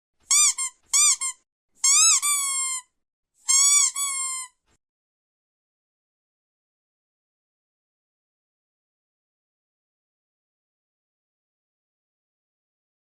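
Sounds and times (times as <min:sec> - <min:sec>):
rubber duck squeaking: 0:00.3 - 0:02.9, 0:03.5 - 0:04.6.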